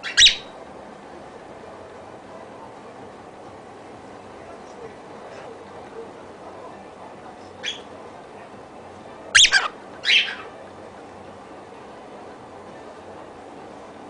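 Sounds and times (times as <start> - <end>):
cockatiel calling and squawking: 0.0 - 0.5, 7.6 - 7.9, 9.4 - 10.5.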